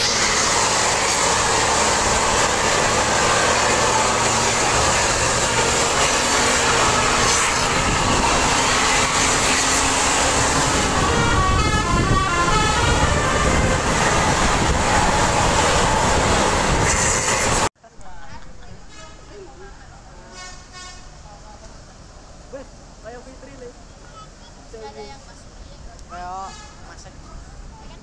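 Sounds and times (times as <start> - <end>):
multi-note bus horn: 0.0 - 16.1, 18.8 - 19.5, 20.2 - 21.2, 26.4 - 27.0
bus engine running: 0.0 - 17.7.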